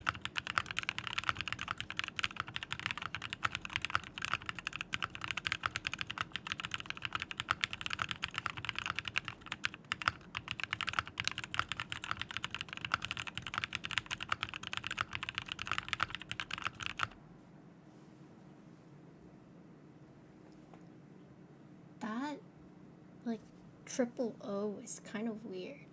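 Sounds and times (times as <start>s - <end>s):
mechanical keyboard typing: 0.0s - 17.2s.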